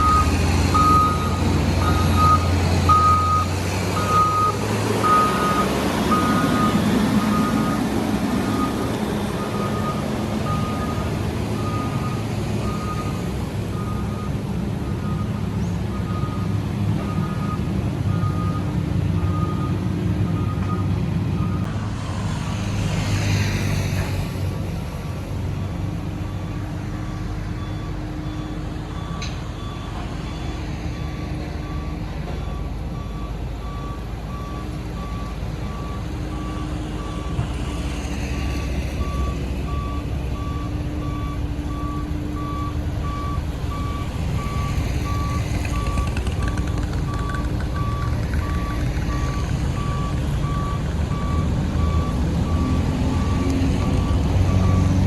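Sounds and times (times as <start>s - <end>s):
reversing alarm beeping: 0.0s - 8.8s, 9.4s - 11.0s, 39.0s - 55.0s
diesel engine running: 0.0s - 55.0s.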